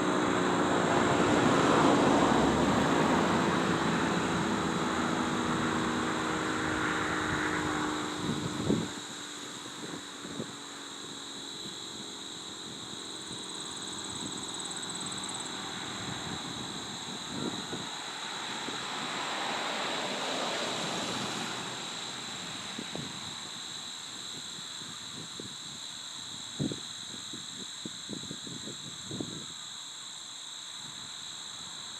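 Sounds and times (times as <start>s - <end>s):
vehicle passing: 0.2s - 8.8s, 13.8s - 22.9s.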